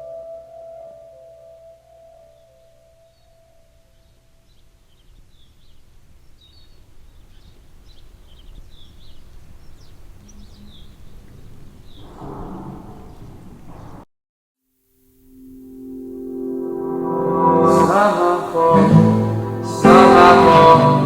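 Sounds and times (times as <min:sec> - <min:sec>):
small birds chirping: 0:02.4 - 0:12.1.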